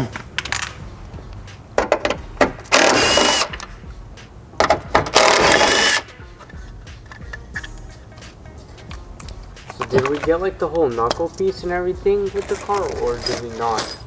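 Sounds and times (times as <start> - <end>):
clicks and knocks: 1.8 - 2.8
handheld power tool running: 2.7 - 3.6, 5.2 - 6.0.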